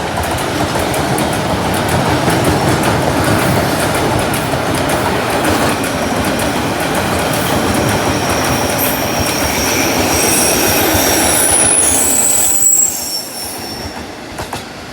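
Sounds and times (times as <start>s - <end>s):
train wagons rumbling on rails: 0.0s - 14.9s
high-pitched wheel squeal: 8.1s - 14.0s.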